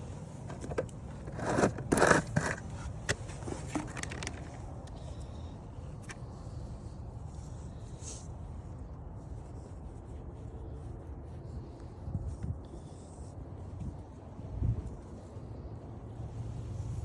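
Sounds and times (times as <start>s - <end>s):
scraping and rustling: 0.0s - 5.2s.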